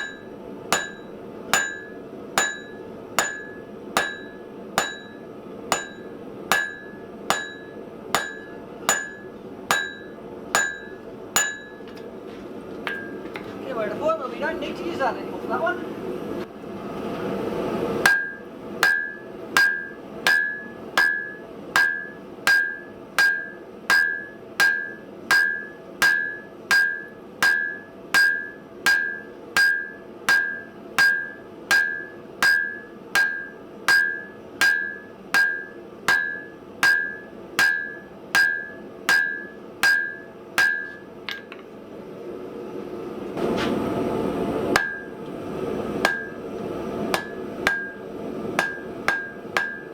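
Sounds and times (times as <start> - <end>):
hammer striking steel on anvil: 0.0 - 12.0, 12.9 - 13.4, 18.0 - 41.7, 44.7 - 45.2, 46.0 - 46.4, 47.1 - 49.9.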